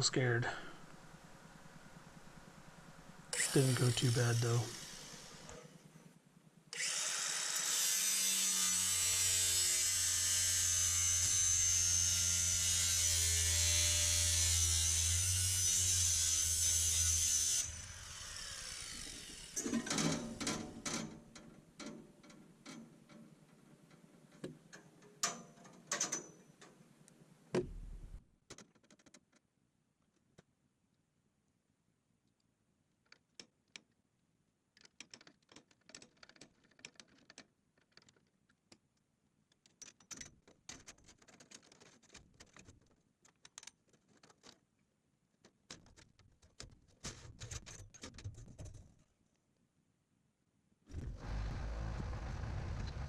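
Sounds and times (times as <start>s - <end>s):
power tool cutting blade: 3.3s - 5.7s, 6.8s - 20.0s
sharp clicks and knocks: 27.5s - 29.5s, 34.8s - 44.7s.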